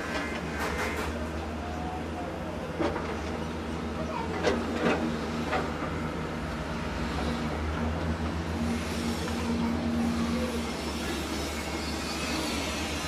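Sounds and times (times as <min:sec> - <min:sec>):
diesel engine rumbling: 0:00.0 - 0:13.0.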